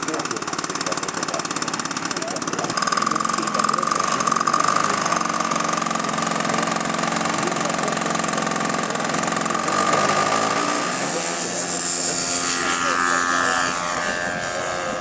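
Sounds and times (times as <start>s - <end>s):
model aircraft engine running: 0.0s - 15.0s.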